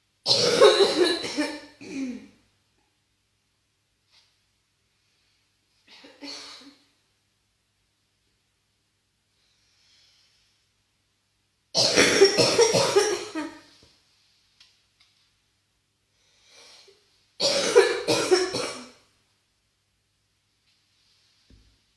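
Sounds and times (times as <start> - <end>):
person coughing harshly: 0.3 - 2.4, 5.9 - 6.8, 11.8 - 13.6, 17.4 - 19.0
faint breath in: 9.3 - 10.6.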